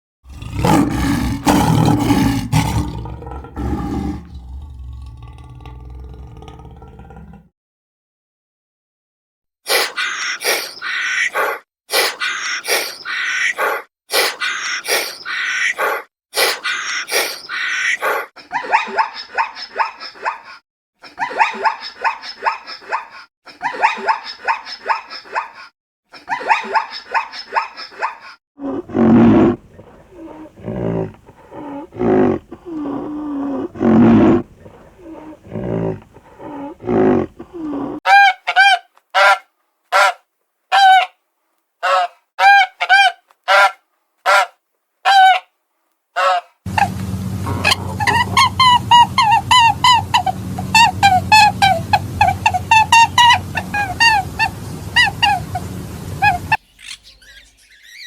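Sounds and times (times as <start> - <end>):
deep low animal calls: 0.3 - 7.5, 28.6 - 38.0, 46.7 - 58.0
rapid chattering animal calls: 9.7 - 18.2, 46.7 - 58.0
short loud honking calls: 46.7 - 55.4.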